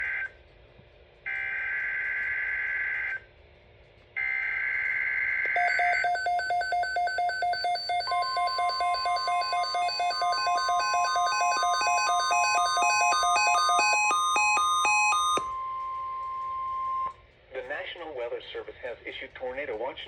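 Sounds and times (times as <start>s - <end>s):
rapid repeating electronic beeps: 5.6s - 17.1s
steady high tone: 5.6s - 17.1s.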